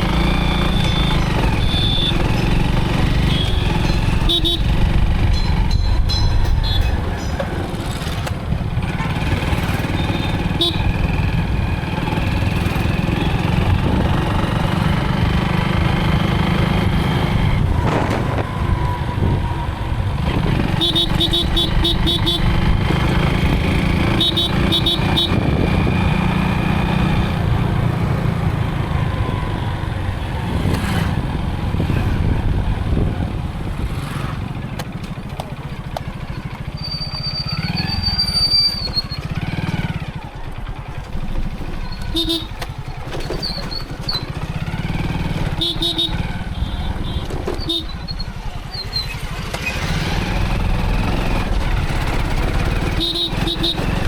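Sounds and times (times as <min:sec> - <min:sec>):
motorcycle engine rumbling: 0:00.0 - 0:54.0
short horn beeps: 0:00.5 - 0:02.4, 0:03.2 - 0:04.7, 0:09.8 - 0:11.0, 0:20.8 - 0:22.6, 0:24.1 - 0:25.4, 0:41.9 - 0:42.7, 0:45.5 - 0:48.3, 0:52.9 - 0:53.9.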